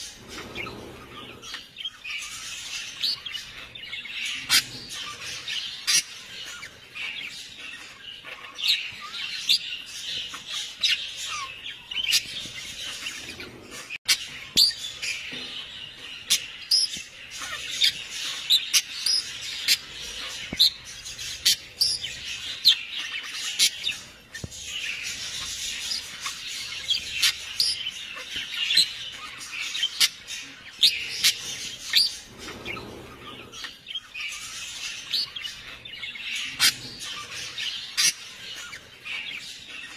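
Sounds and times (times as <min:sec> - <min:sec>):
many birds chirping and squawking: 0:00.0 - 0:39.9.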